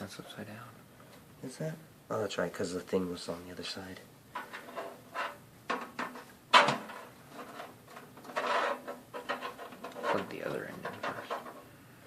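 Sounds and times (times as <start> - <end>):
scraping rustle: 4.4 - 11.7.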